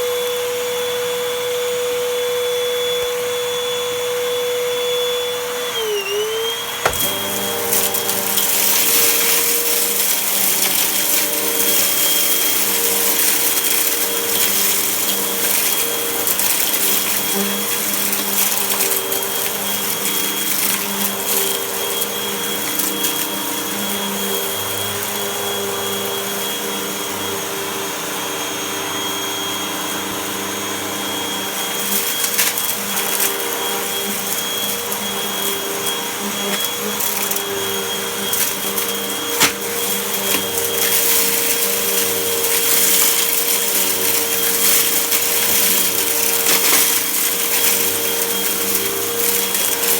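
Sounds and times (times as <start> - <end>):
vacuum cleaner motor running: 0.0 - 49.9
debris crackling and rattling: 6.9 - 23.4, 36.4 - 49.9.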